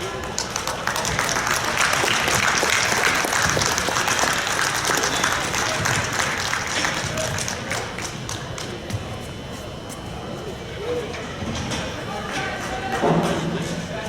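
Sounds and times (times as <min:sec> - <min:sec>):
spectators clapping and cheering: 0:00.0 - 0:09.0, 0:12.1 - 0:13.8.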